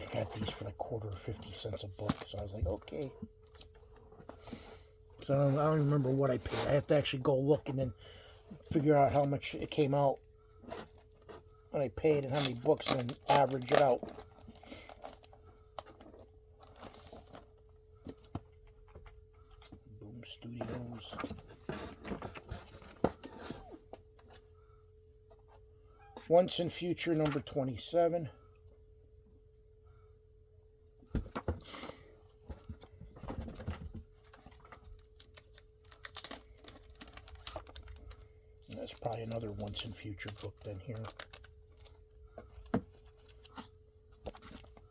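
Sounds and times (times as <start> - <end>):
comic books rustling: 0.0 - 24.1, 31.2 - 44.9
faint steady hum: 0.0 - 44.9.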